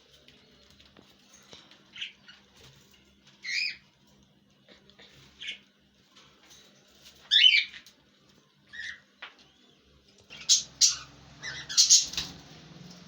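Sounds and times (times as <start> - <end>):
parrots squawking: 8.7 - 9.0, 10.3 - 12.4.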